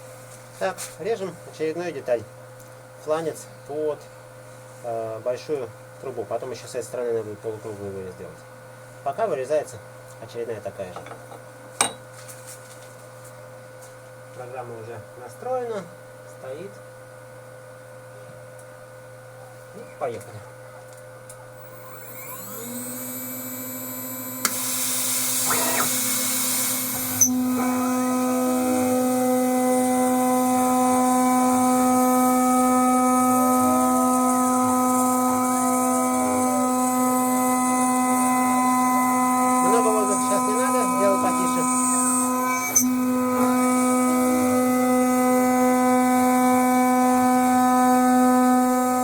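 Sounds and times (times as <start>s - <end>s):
milling machine spindle whine: 21.6s - 49.0s
air blast hiss: 24.4s - 27.2s.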